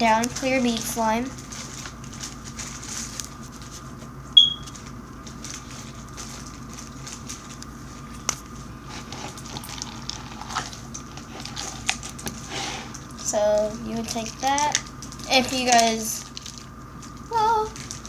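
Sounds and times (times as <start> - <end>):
short high-pitched beep: 4.4 - 4.7.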